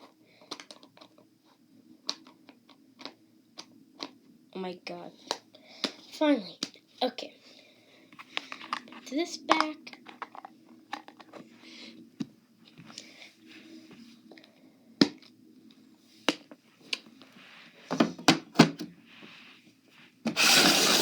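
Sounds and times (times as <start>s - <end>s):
dense scratchy noise: 20.4s - 21.0s.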